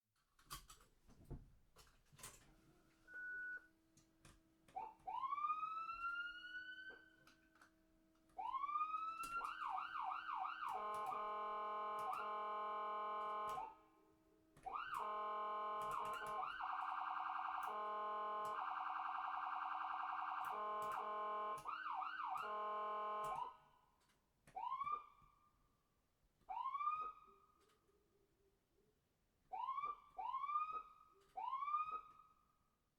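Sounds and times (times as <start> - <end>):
ambulance siren: 4.7 - 7.4, 8.4 - 13.9, 14.6 - 23.8, 24.6 - 25.4, 26.5 - 27.6, 29.5 - 32.5.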